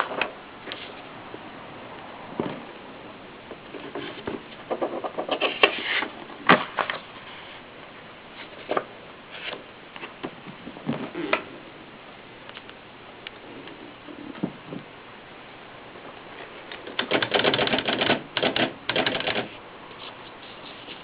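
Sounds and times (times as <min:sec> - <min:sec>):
brief scrape: 0:05.3 - 0:06.1
typewriter mechanism clicking: 0:16.8 - 0:19.5.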